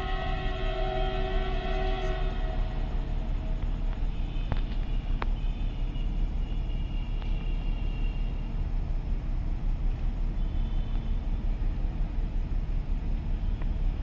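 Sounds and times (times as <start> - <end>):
train rumbling past: 0.0 - 6.4.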